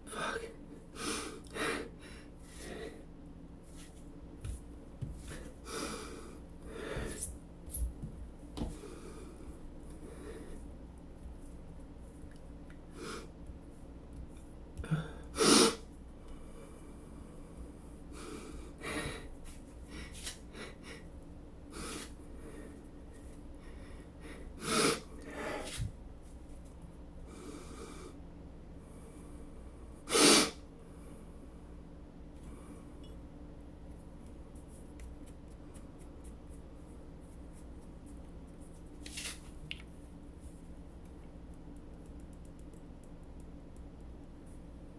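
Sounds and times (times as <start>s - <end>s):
quiet breaths: 8.6s - 10.8s, 16.1s - 25.9s, 27.2s - 30.0s.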